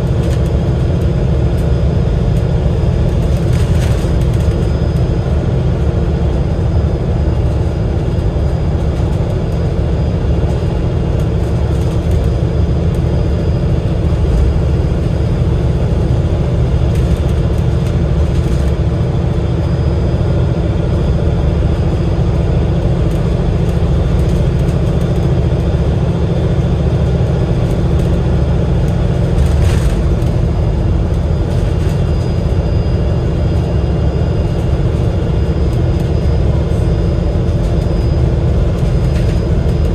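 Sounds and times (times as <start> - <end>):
bus engine drone: 0.0 - 39.9
road noise: 26.5 - 37.8.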